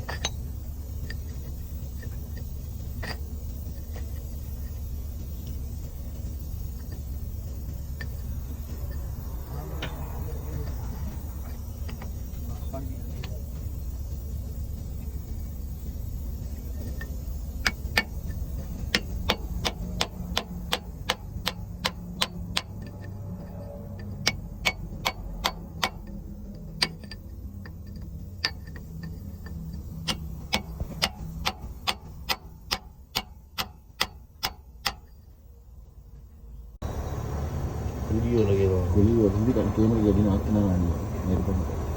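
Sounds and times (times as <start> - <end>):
low steady hum: 0.0 - 41.9
sharp clicks: 16.5 - 35.2.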